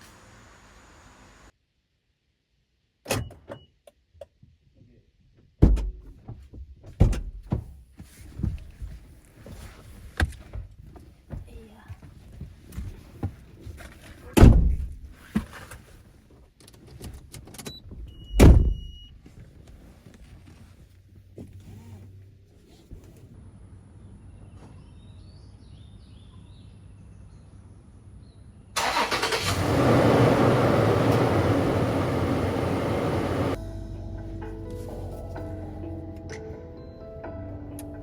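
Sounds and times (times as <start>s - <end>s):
vehicle engine humming: 28.8s - 33.6s
loud engine and road noise: 29.3s - 33.6s.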